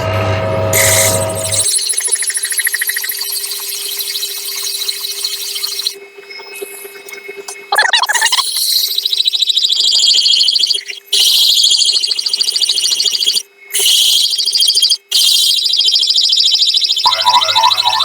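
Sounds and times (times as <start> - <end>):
hole saw squealing into ceramic: 17.0 - 18.0.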